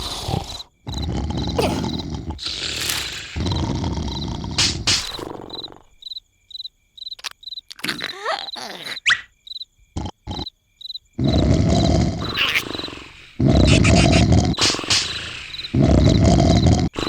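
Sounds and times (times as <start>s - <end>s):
cartoon rasping snore: 0.0s - 6.0s, 7.7s - 9.3s, 10.0s - 10.5s, 11.2s - 17.0s
crickets chirping: 0.0s - 17.0s
whiny vocal glide: 1.4s - 3.6s, 12.2s - 16.2s.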